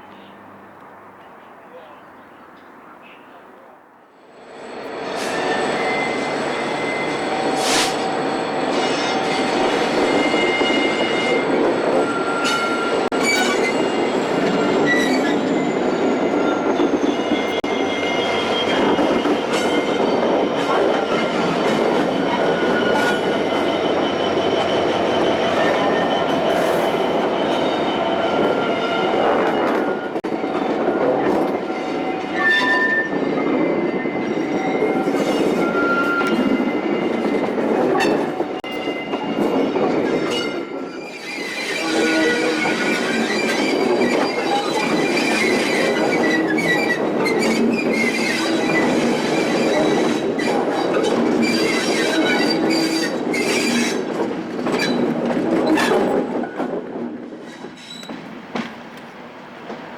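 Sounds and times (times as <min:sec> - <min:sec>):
train wheels squealing: 0:04.3 - 0:56.7, 0:57.4 - 0:58.3.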